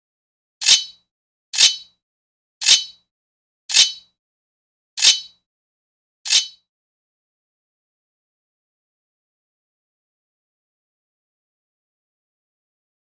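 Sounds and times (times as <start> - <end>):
sword blade scraping metal: 0.6 - 1.0, 1.6 - 2.0, 2.6 - 3.0, 3.7 - 4.1, 5.0 - 5.4, 6.3 - 6.6.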